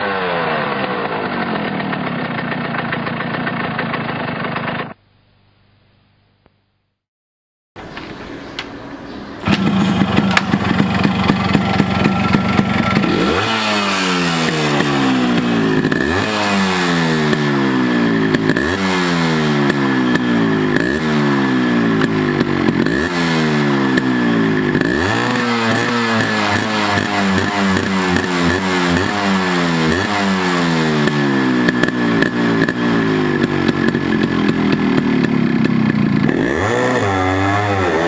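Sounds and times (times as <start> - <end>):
motorcycle engine idling and revving: 0.0 - 5.0, 9.3 - 38.0.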